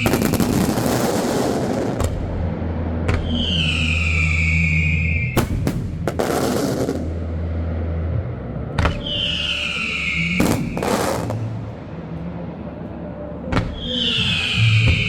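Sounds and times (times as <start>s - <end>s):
firework bangs: 0.0s - 7.4s, 8.8s - 11.8s
firework whistle falling in pitch: 3.2s - 5.6s, 8.9s - 11.6s, 13.5s - 15.0s.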